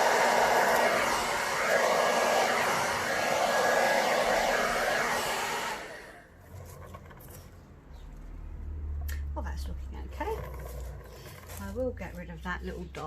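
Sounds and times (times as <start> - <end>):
hair dryer blowing: 0.0 - 6.3.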